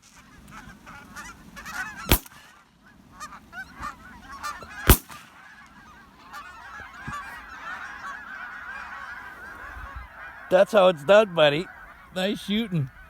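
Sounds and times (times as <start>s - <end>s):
geese honking: 0.0s - 13.0s
shotgun shots: 2.1s - 2.4s, 4.8s - 5.3s.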